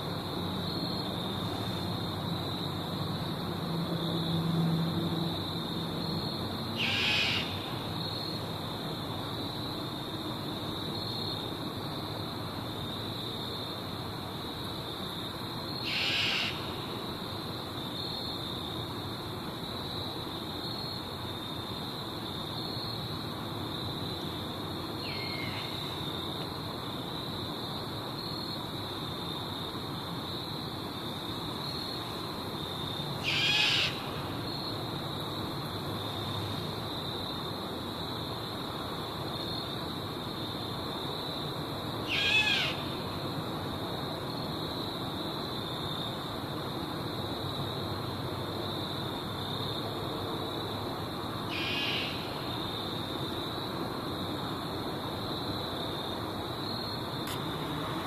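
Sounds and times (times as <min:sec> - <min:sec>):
insect trill: 0:00.0 - 0:58.0
owl screeching: 0:06.8 - 0:07.6, 0:15.8 - 0:16.6, 0:33.2 - 0:34.0, 0:42.1 - 0:42.8, 0:51.5 - 0:52.3.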